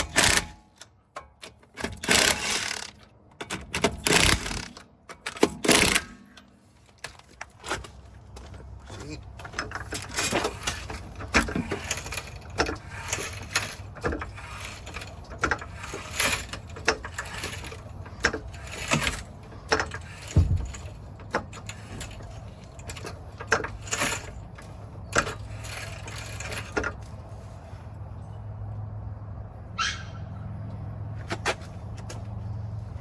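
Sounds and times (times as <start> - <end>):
metal tools clinking and knocking: 0.0 - 8.0, 9.4 - 27.2.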